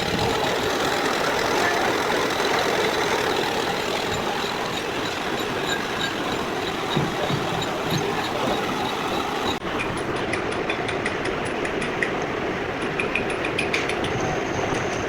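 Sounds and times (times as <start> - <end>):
light rapid ticking: 0.0 - 10.2
milling machine running: 0.0 - 10.2.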